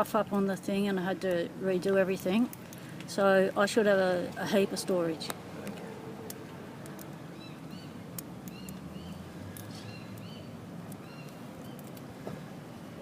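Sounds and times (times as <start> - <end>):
steady outdoor hum: 0.0 - 13.0
small bird chirping: 7.3 - 12.0.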